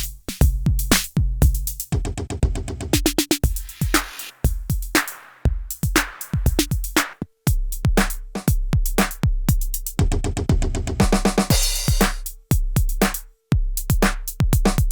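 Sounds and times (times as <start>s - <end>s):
snare and clap hits: 0.0s - 0.3s, 0.9s - 1.2s, 3.0s - 4.4s, 5.0s - 5.4s, 6.0s - 6.4s, 7.0s - 7.3s, 12.0s - 12.2s, 14.0s - 14.2s
deep drum machine kicks: 0.0s - 14.9s
hi-hat ticks: 3.0s - 10.1s, 11.3s - 14.9s.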